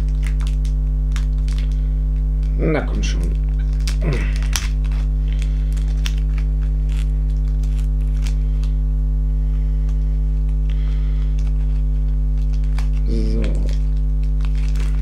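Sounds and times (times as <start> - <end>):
packaging rustling: 0.0 - 8.8, 9.9 - 15.0
electrical mains hum: 0.0 - 15.0.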